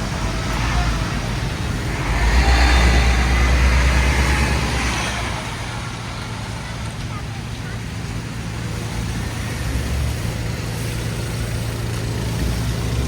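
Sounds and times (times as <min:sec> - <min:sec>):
vehicle passing by: 0:00.0 - 0:06.7
traffic noise: 0:00.0 - 0:13.0.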